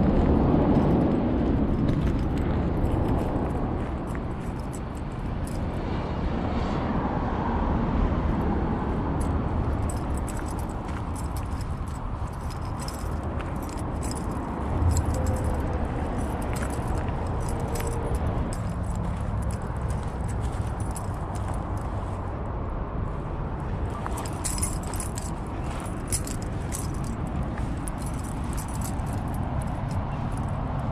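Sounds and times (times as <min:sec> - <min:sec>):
road traffic rumble: 0:00.0 - 0:30.9
light clicks and jingles: 0:00.1 - 0:05.7, 0:09.2 - 0:22.3, 0:23.7 - 0:30.9.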